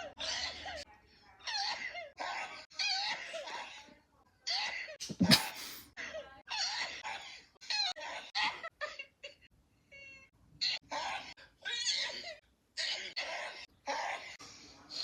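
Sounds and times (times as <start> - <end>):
short high-pitched vocal sounds: 5.1 - 5.8.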